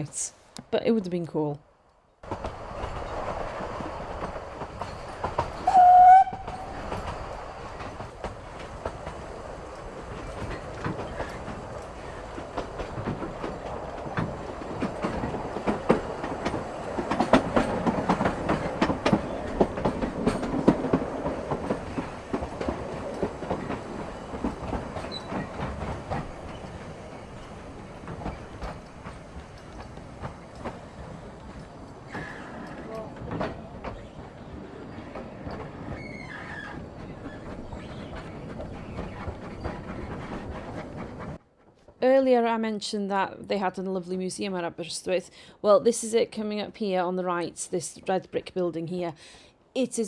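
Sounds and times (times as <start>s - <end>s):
steam train rumbling: 2.2s - 41.7s.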